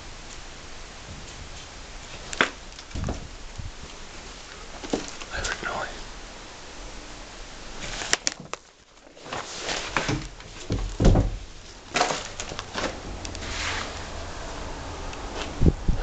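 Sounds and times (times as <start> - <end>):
rustling: 0.0 - 14.3
heavy thump: 10.1 - 11.5.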